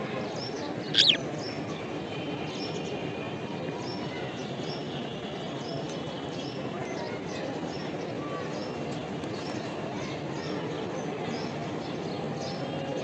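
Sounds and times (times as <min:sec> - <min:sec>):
budgerigars chirping: 0:01.0 - 0:01.2
loud sharp bird call: 0:01.0 - 0:01.2.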